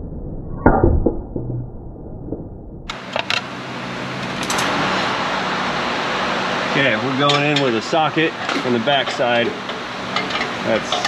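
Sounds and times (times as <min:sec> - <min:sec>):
tools clicking and clinking: 0:08.4 - 0:11.0.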